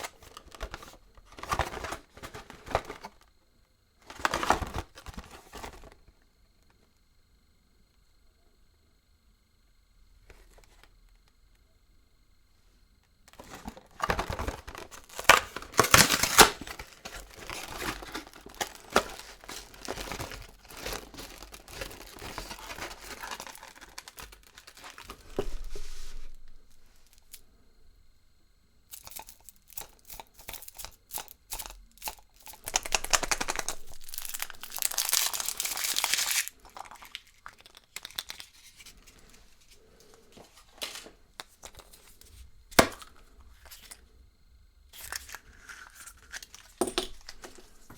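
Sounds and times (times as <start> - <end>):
foil wrapper crinkling: 13.4 - 27.4, 28.9 - 39.9.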